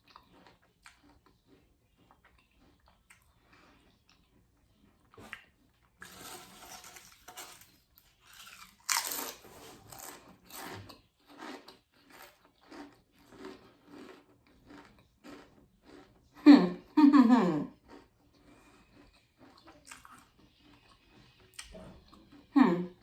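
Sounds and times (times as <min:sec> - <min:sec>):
crisps crunching in mouth: 0:06.0 - 0:16.1, 0:17.8 - 0:20.8.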